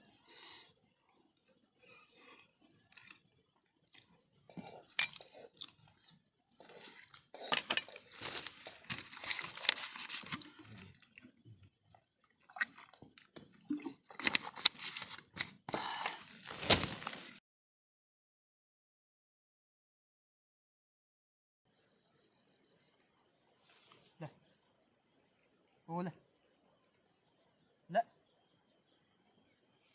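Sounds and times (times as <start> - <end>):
person chewing noodles: 3.9 - 11.3.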